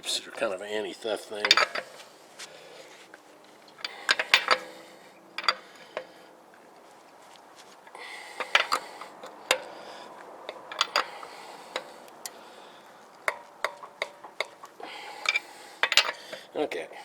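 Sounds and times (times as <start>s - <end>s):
lug wrench clicking on lug nuts: 1.4s - 2.1s, 3.6s - 6.3s, 8.0s - 16.6s.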